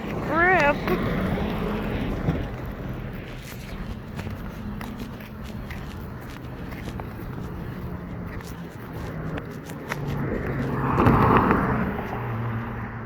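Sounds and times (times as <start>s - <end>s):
car driving past: 8.9s - 13.0s.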